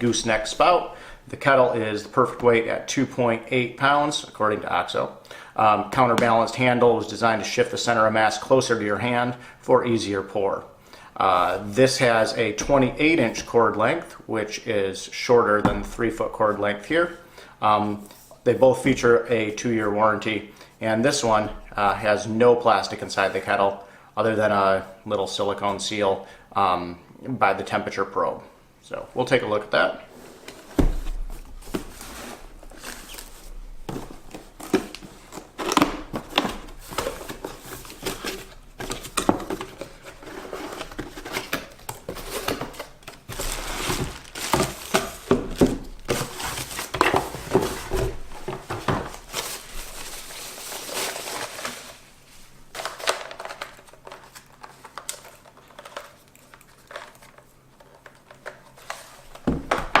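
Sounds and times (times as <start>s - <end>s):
paper and plastic crinkling: 30.4s - 60.0s.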